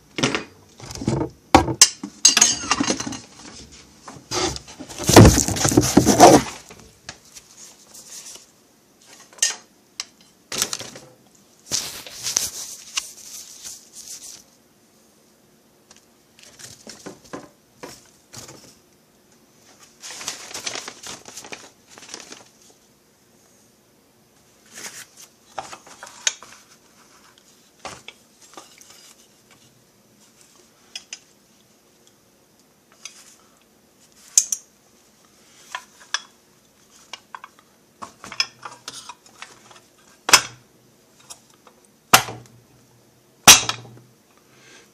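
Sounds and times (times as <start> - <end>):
metal tools clinking and clattering: 2.2 - 3.2.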